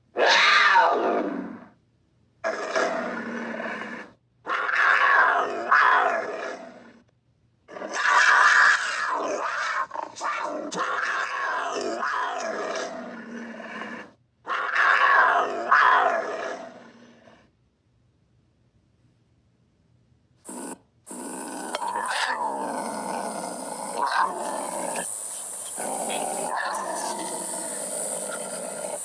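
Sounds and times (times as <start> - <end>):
panther rasping calls: 20.5 - 29.0.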